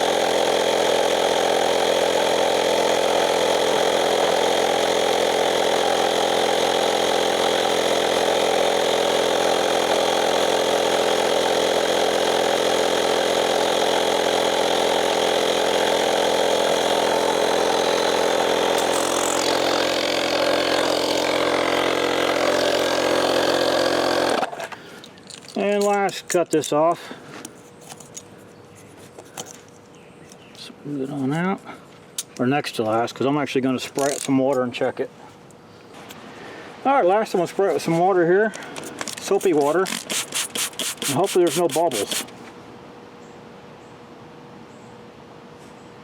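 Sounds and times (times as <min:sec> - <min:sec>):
air compressor running: 0:00.0 - 0:26.0, 0:37.4 - 0:42.6.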